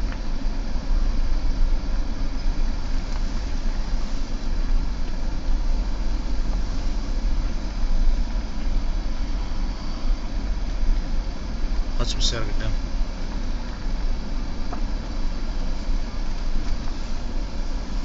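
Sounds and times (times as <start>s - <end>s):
car engine rumble: 0.0s - 18.0s
road noise hiss: 0.0s - 18.0s.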